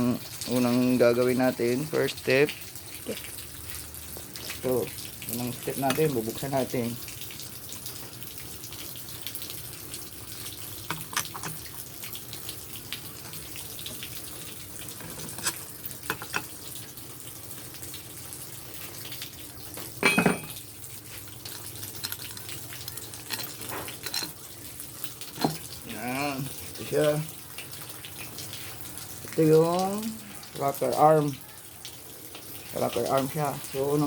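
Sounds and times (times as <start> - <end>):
hand tools clicking and clinking: 21.4 - 24.4.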